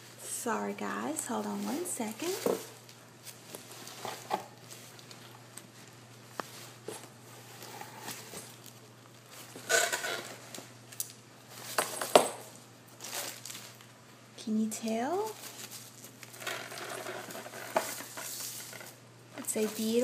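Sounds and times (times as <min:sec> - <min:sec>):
package rustling: 0:12.9 - 0:14.0, 0:15.2 - 0:19.0.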